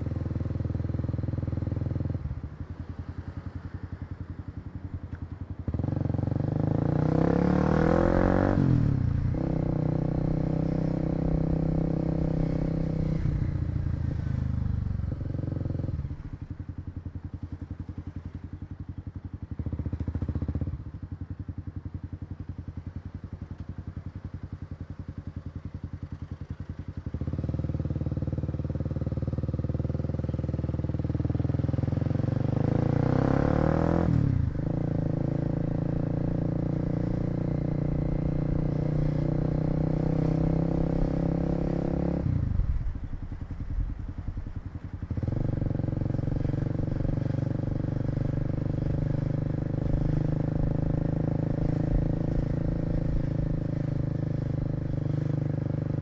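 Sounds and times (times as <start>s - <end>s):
motorcycle engine: 0.0s - 56.0s.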